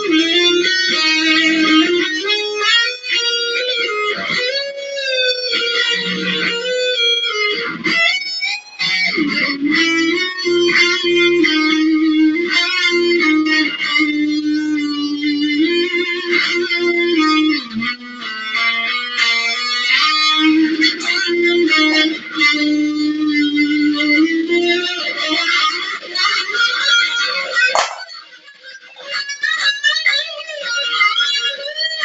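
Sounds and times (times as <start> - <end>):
electric guitar shredding: 27.5 - 28.3.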